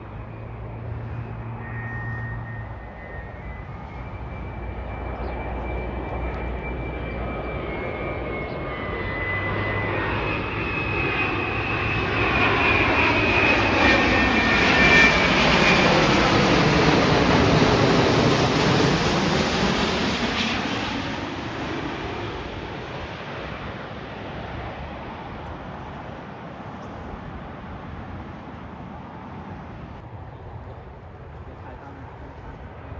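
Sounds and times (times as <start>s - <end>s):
high engine whine: 0.0s - 21.4s
jet airliner passing overhead: 0.0s - 32.9s.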